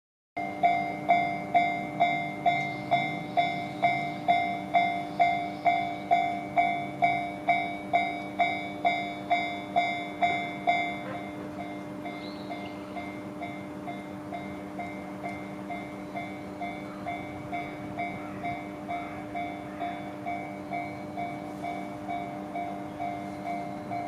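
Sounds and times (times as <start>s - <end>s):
level crossing bell ringing: 0.4s - 24.0s.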